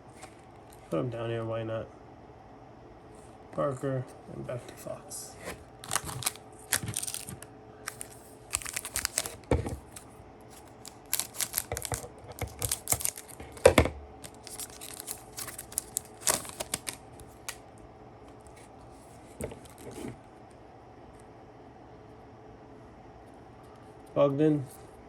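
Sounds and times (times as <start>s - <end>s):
cards and wrapper rustling: 5.8s - 17.6s.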